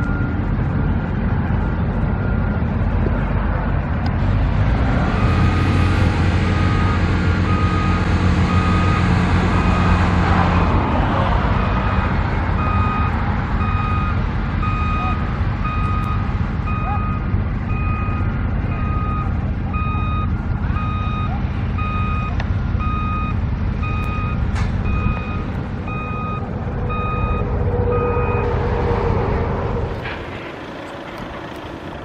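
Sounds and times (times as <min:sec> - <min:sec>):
engine rumbling: 0:00.0 - 0:32.0
backup alarm beeping: 0:06.6 - 0:10.0, 0:12.6 - 0:28.6.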